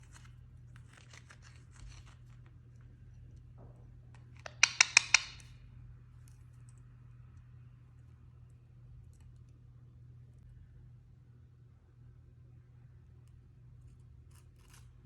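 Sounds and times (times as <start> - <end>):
parakeet clicking chirps: 4.4 - 5.5.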